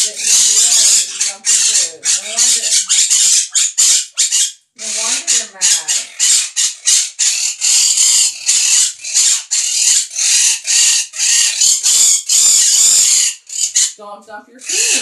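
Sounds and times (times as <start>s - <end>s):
parrot squawking: 0.0s - 15.0s.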